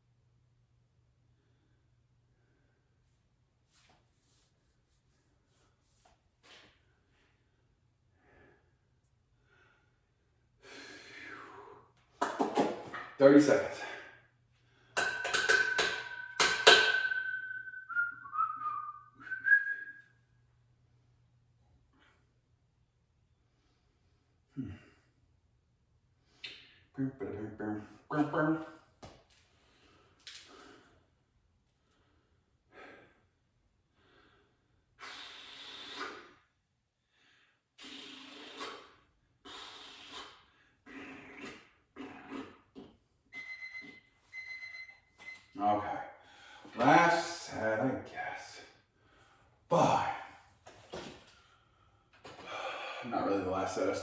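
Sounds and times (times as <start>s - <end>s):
man breathing hard: 9.4s - 12.0s, 33.9s - 36.4s, 37.0s - 42.4s, 51.3s - 53.1s
person whistling: 17.0s - 20.1s.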